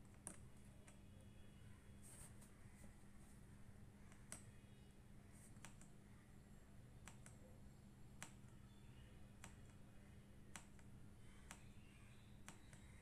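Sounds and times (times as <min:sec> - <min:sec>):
low steady hum: 0:00.0 - 0:13.0
faint keyboard keypresses: 0:04.0 - 0:04.6, 0:05.4 - 0:06.0, 0:07.0 - 0:07.5, 0:08.1 - 0:09.8, 0:10.4 - 0:13.0.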